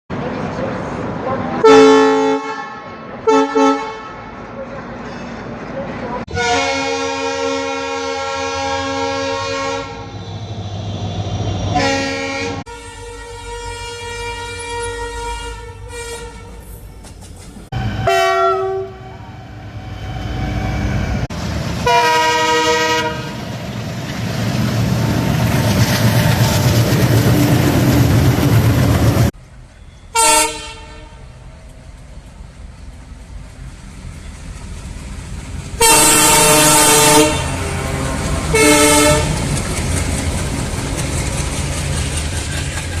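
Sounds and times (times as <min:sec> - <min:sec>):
train rumble: 0:00.1 - 0:43.0
locomotive horn blasts: 0:01.6 - 0:04.4, 0:06.3 - 0:10.1, 0:11.7 - 0:16.6, 0:17.7 - 0:19.6, 0:21.8 - 0:23.4, 0:30.1 - 0:31.3, 0:35.8 - 0:39.4.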